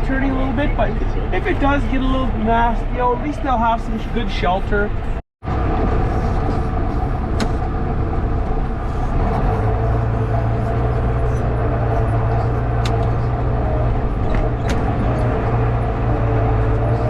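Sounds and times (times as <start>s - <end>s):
tractor engine running: 0.0s - 17.0s
deep low hum: 4.0s - 17.0s.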